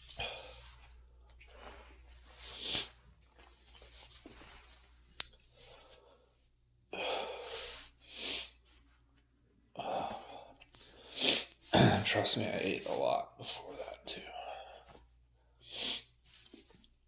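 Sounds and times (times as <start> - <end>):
person breathing heavily: 0.0 - 2.9, 5.6 - 8.6.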